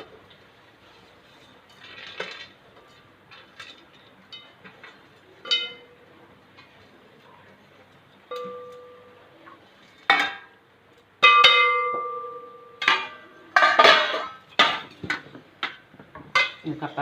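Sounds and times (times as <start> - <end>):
metal kitchen vessel ringing: 11.2 - 14.9.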